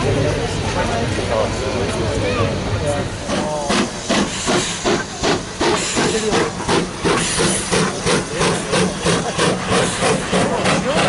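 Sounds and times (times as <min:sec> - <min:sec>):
steam locomotive chuffing: 0:00.0 - 0:11.0
steam hissing: 0:03.0 - 0:11.0.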